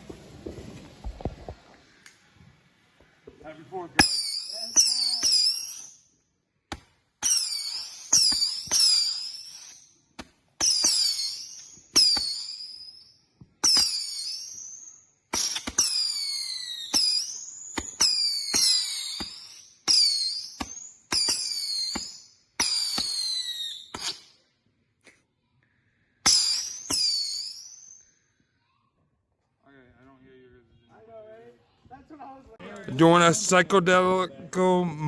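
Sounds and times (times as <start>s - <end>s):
firework pops: 0.0s - 2.2s
shrill firework whistles: 4.0s - 6.0s, 7.2s - 9.9s, 10.6s - 24.4s, 26.3s - 28.2s.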